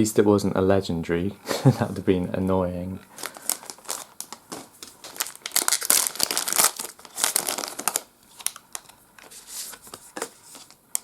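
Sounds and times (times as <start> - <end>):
foil wrapper tearing and crinkling: 3.2 - 9.0.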